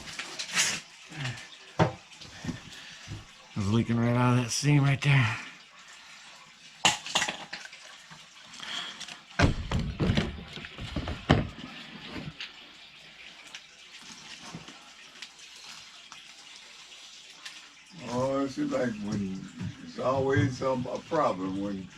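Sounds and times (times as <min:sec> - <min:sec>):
water hissing and spraying: 0:00.0 - 0:01.5
loud knocks and clunks: 0:09.4 - 0:11.6.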